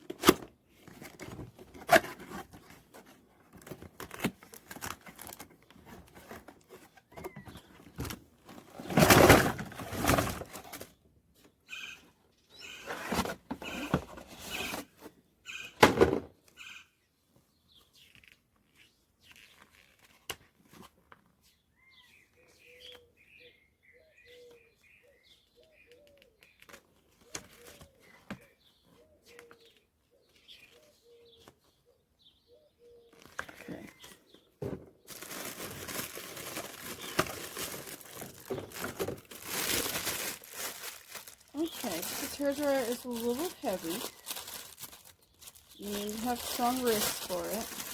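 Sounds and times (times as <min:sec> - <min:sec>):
packaging rustling: 0:00.8 - 0:10.9, 0:35.0 - 0:47.9
wrapping crinkling: 0:03.0 - 0:06.4, 0:35.1 - 0:47.9.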